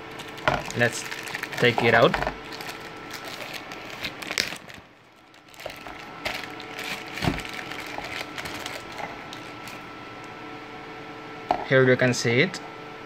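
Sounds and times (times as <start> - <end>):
packaging rustling: 0.0 - 9.9.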